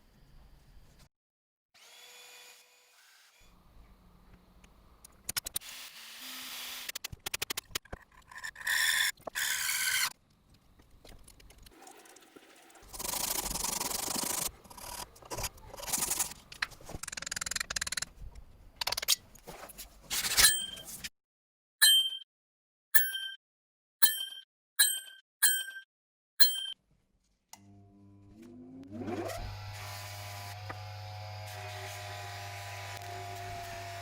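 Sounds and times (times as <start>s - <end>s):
short metallic ring: 20.4s - 20.9s, 21.8s - 22.2s, 23.0s - 23.4s, 24.0s - 25.8s, 26.4s - 26.8s.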